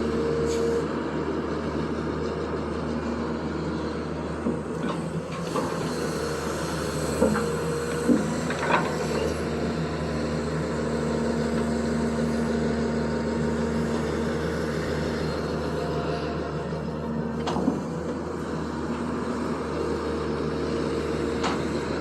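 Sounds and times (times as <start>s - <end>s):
excavator diesel engine running: 0.0s - 22.0s.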